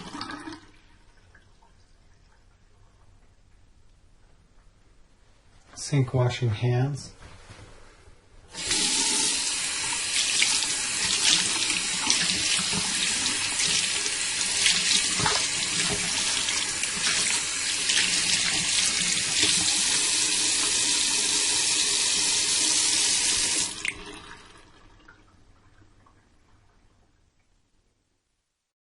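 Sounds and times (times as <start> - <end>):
hands washing splashes: 8.6 - 20.0
tap water running into sink: 8.6 - 25.3.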